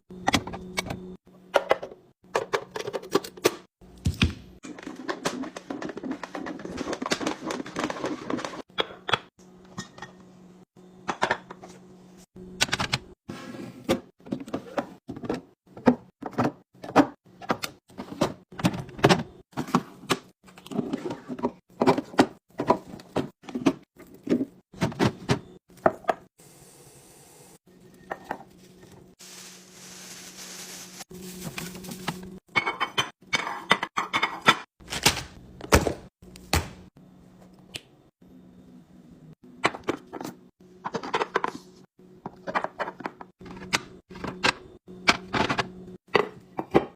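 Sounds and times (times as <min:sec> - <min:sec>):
jars and dishes clinking: 0:32.5 - 0:34.6.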